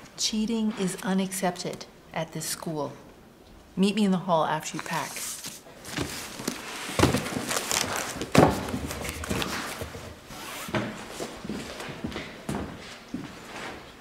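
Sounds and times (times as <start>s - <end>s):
rustling and shuffling: 4.7s - 14.0s
footsteps: 4.9s - 13.9s.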